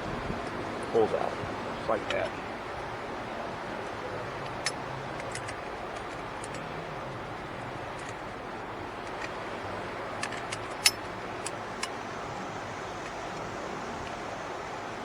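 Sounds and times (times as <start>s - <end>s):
steady background hiss: 0.0s - 15.0s
light sharp clicks of small parts: 4.4s - 6.7s, 9.0s - 9.4s, 10.2s - 12.0s.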